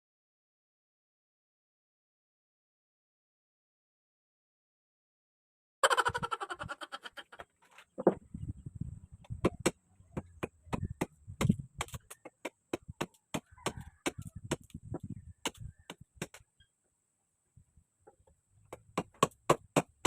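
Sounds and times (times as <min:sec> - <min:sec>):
tool chopping wood: 0:09.4 - 0:14.8, 0:15.4 - 0:16.4, 0:18.7 - 0:20.0.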